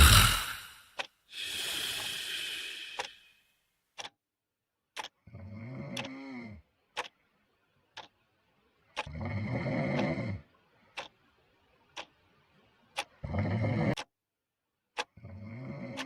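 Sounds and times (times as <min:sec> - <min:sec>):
person snoring loudly: 0:00.0 - 0:00.8, 0:01.4 - 0:03.2
clock ticking: 0:02.9 - 0:03.2, 0:04.0 - 0:04.2, 0:09.9 - 0:10.1, 0:11.0 - 0:11.2.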